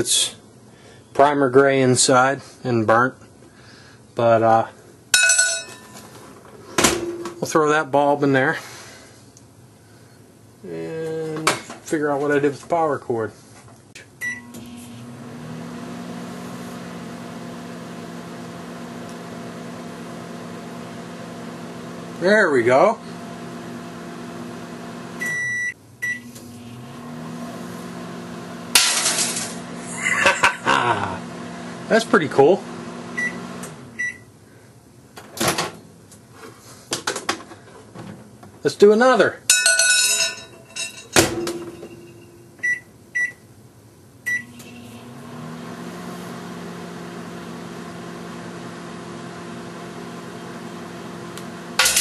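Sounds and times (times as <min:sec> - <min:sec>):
microwave humming: 0:06.7 - 0:07.5, 0:14.2 - 0:34.4, 0:44.3 - 0:52.0
microwave beeps: 0:14.2 - 0:15.1, 0:25.2 - 0:26.8, 0:33.2 - 0:34.3, 0:41.8 - 0:43.5, 0:44.3 - 0:45.1.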